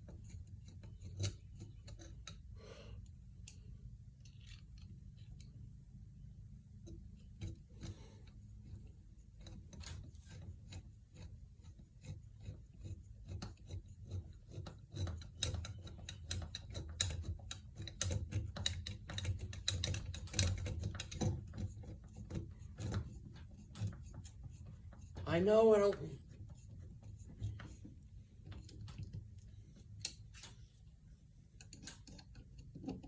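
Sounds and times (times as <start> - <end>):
mechanical clicking and rattling: 12.9 - 25.2.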